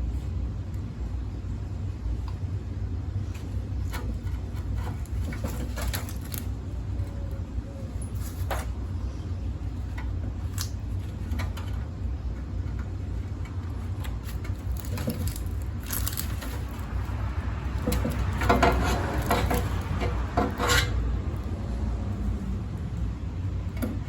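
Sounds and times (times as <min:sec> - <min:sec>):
steady low rumble: 0:00.0 - 0:24.0
metal clattering: 0:11.1 - 0:21.4
metal parts clinking and knocking: 0:13.4 - 0:21.0.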